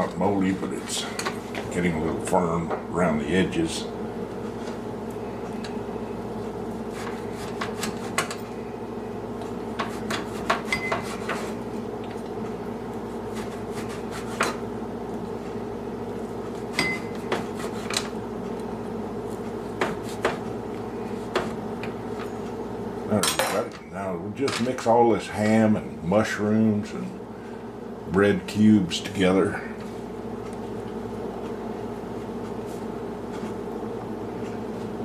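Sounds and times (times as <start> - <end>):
steady low hum: 0.0 - 35.0
knife cutting bread: 6.8 - 8.3, 9.4 - 11.6, 13.2 - 14.6, 16.4 - 18.1.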